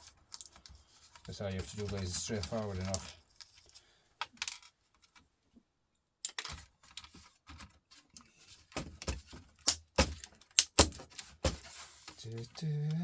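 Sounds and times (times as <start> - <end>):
laptop parts clicking and knocking: 8.7 - 11.6.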